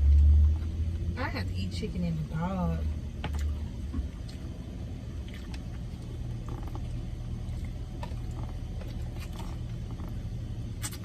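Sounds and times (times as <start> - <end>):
low hum: 0.0 - 11.0
people chewing and eating: 3.2 - 11.0.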